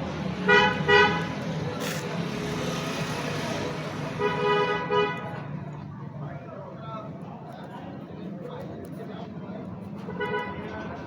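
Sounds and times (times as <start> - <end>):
vehicle horn toots: 0.5 - 1.2.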